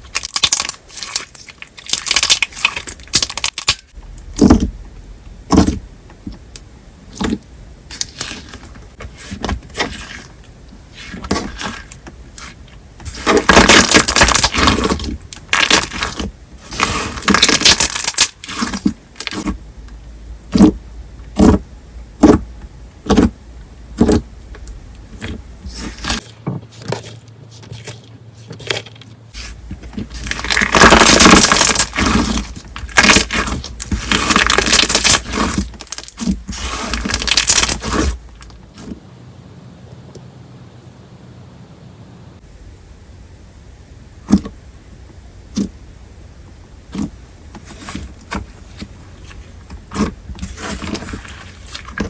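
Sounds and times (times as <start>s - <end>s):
slime crackling and popping: 0.0s - 4.6s, 13.1s - 19.6s, 30.0s - 38.5s.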